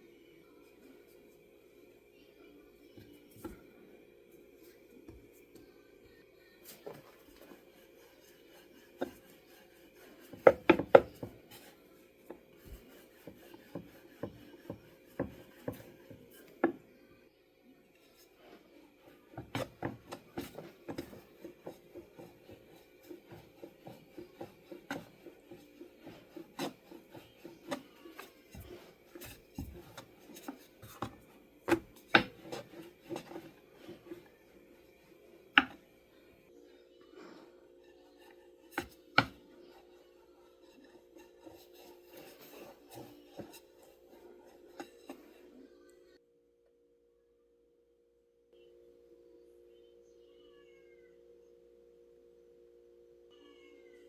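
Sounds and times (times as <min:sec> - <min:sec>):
dough rubbing on wooden board: 0:06.1 - 0:17.0, 0:17.9 - 0:45.6.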